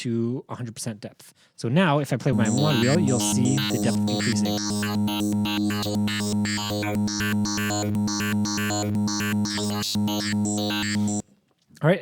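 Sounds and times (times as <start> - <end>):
distorted synthesizer tone: 2.3 - 11.2.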